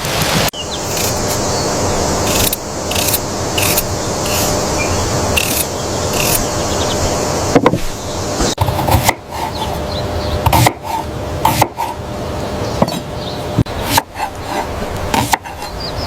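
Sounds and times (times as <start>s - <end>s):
steady hiss: 0.0s - 8.6s.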